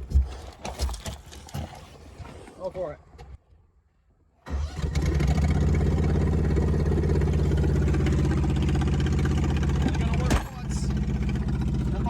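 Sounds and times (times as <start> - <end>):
lawn mower engine starting and running: 4.5 - 12.0.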